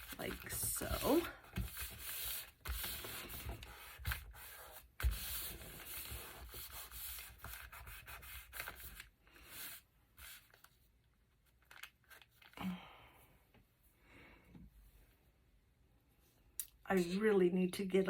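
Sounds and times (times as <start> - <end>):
paper rubbing and rustling: 0.0 - 10.8.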